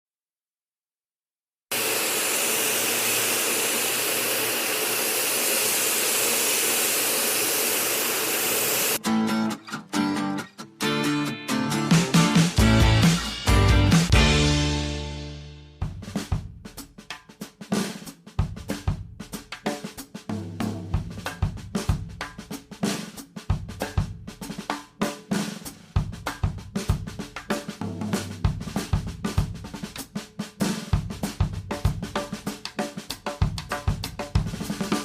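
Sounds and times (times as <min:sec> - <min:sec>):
drum kit playing rock beat: 0:10.8 - 0:35.0.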